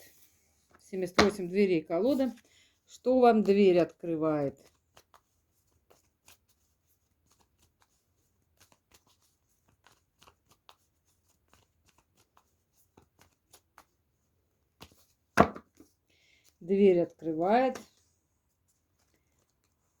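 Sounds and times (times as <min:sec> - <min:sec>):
cards shuffled and flicked: 0:01.1 - 0:01.5, 0:04.6 - 0:16.6, 0:17.5 - 0:18.0, 0:18.9 - 0:20.0
card slap: 0:01.2 - 0:01.4, 0:15.4 - 0:15.7.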